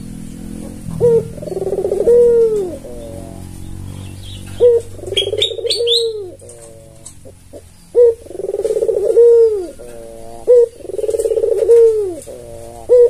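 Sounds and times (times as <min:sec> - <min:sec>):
dove cooing: 0:00.0 - 0:13.0
low steady hum: 0:00.0 - 0:13.0.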